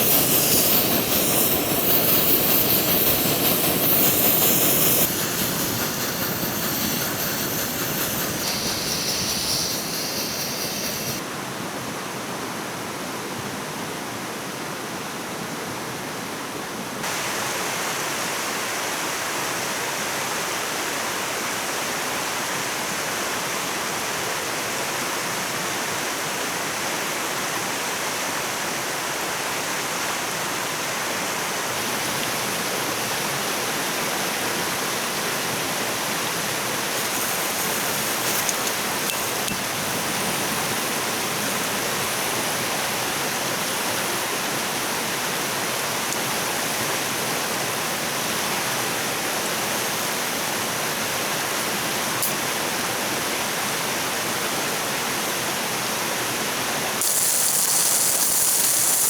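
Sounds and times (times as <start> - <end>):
steady rushing noise: 0.0 - 11.2.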